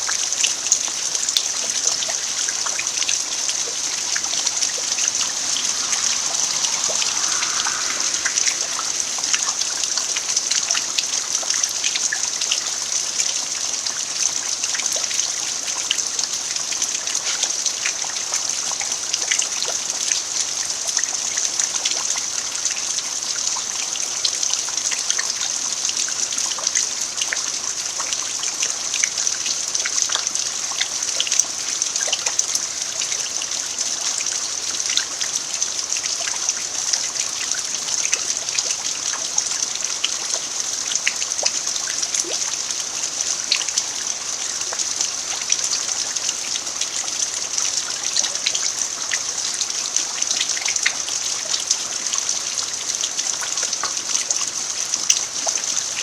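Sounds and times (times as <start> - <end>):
rain falling on dirt: 26.3 - 56.0.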